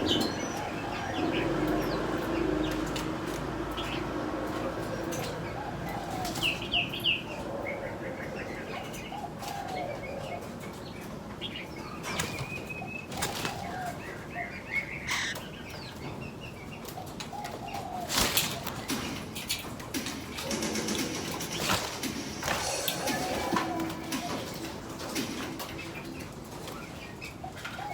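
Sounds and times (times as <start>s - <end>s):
birds chirping: 0.0s - 27.9s
birds flapping wings: 12.0s - 14.1s, 16.8s - 27.9s.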